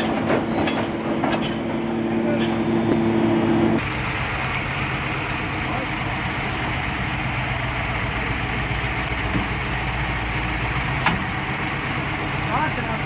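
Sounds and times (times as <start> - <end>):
engine droning: 0.0 - 13.0.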